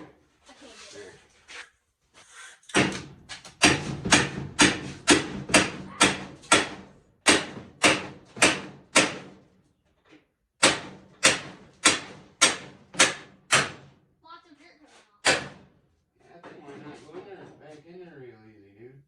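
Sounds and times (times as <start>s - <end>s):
hammer blows ringing: 3.6s - 9.3s.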